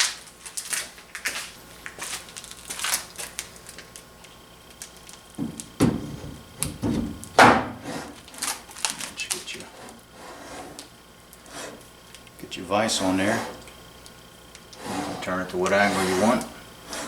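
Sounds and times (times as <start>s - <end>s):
heavy metal knocks and scraping: 5.4s - 8.1s.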